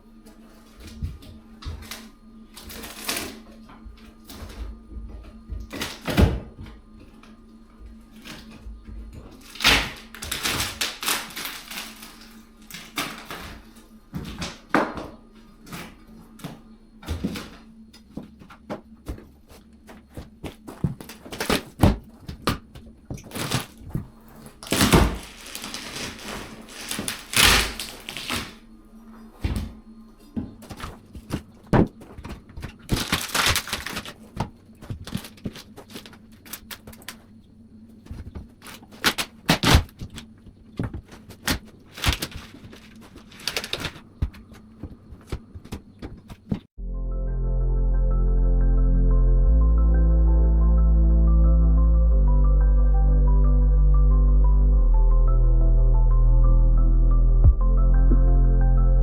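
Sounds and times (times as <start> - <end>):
wood scraping and cracking: 0.3 - 28.6, 29.4 - 46.7.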